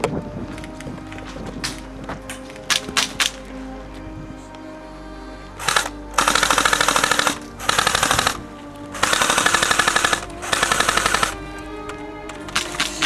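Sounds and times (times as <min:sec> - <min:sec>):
airsoft gun firing bursts: 0:05.6 - 0:08.4, 0:09.0 - 0:11.4, 0:12.5 - 0:13.0.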